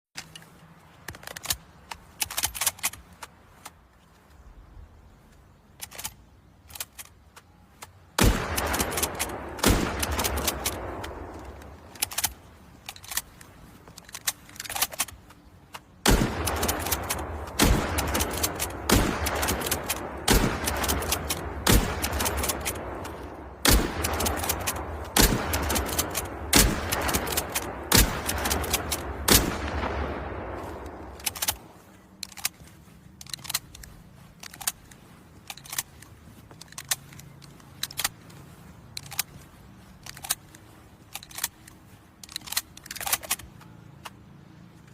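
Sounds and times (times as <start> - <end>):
rifle bolt clicks: 0.2 - 3.8, 5.7 - 39.4, 40.0 - 44.2
rifle shots echoing: 8.2 - 12.4, 16.0 - 31.8.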